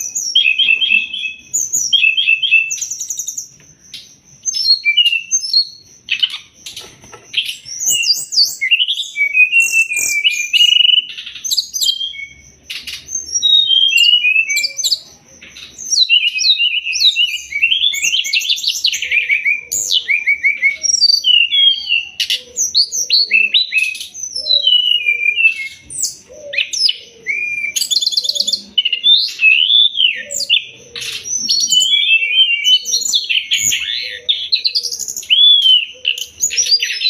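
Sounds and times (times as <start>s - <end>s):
bird singing varied chirps: 0.0s - 37.0s.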